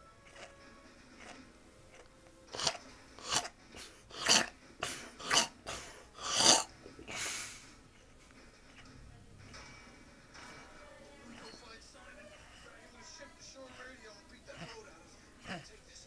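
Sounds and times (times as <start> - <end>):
person snoring: 2.5 - 7.7, 13.6 - 15.8.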